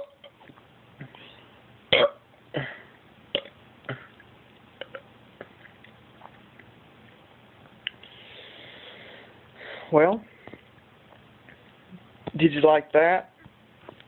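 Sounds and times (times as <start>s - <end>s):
loud burp: 1.9s - 2.8s, 3.4s - 4.1s.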